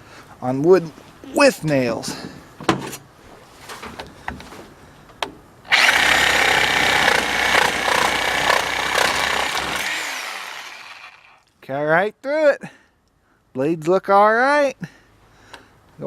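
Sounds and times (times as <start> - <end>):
reciprocating saw cutting board: 5.7 - 11.4.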